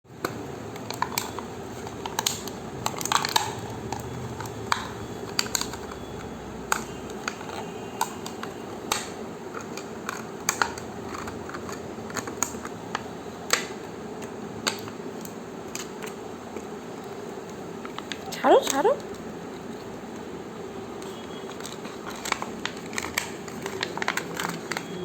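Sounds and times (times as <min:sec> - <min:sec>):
plastic cup crinkling: 0:00.2 - 0:12.8, 0:21.0 - 0:25.0.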